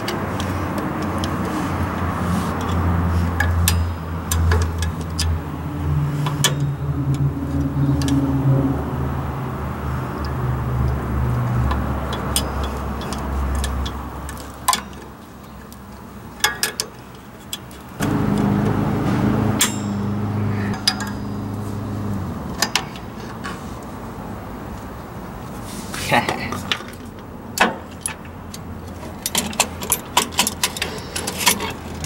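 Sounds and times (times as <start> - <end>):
metallic clicks of tools: 2.6 - 5.4
vehicle engine running: 17.7 - 24.6.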